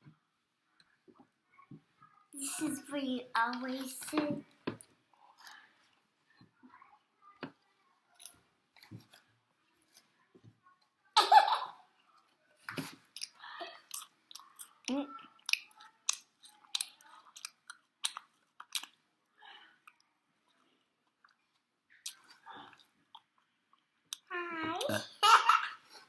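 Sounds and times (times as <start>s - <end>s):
chewing and crunching fried food: 7.6s - 10.2s, 12.1s - 25.0s
wet mouth clicks: 13.1s - 19.0s, 22.0s - 23.3s.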